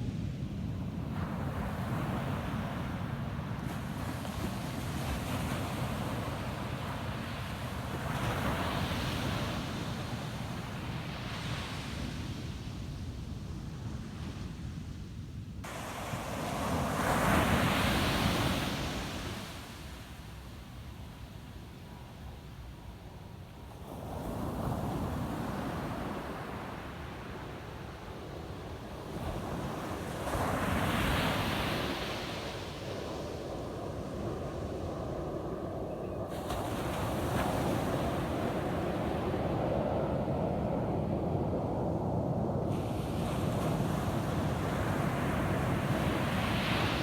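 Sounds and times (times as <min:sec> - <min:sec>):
wind rumble on microphone: 0:00.0 - 0:47.0
ocean surf breaking on beach: 0:15.6 - 0:21.3, 0:23.8 - 0:47.0.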